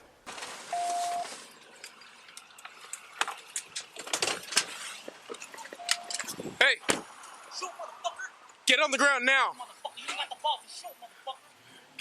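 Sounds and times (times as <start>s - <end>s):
clothing rustling: 0.3s - 6.5s
short electronic beep: 0.7s - 1.3s
clicks and metallic rattles: 1.8s - 6.4s.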